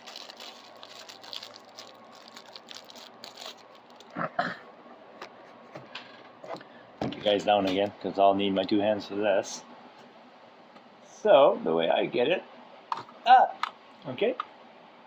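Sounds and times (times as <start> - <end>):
packaging rustling: 0.0 - 4.2.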